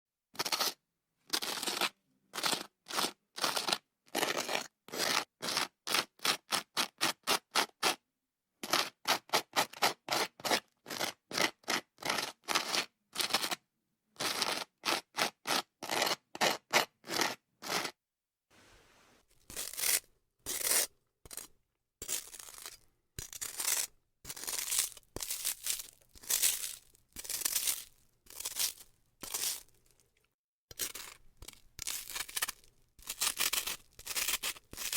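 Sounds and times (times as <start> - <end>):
butter knife scraping toast: 30.8 - 34.9.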